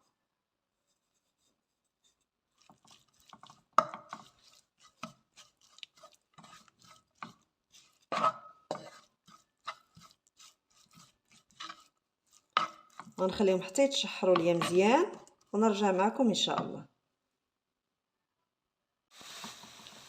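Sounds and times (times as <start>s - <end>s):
spoon stirring in a frying pan: 0.7s - 16.8s
spoon clicking and scraping pan: 2.1s - 15.6s.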